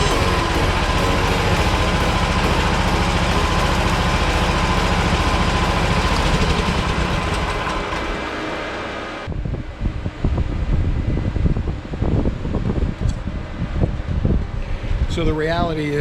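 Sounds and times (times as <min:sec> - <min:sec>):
small engine running: 0:00.0 - 0:09.3.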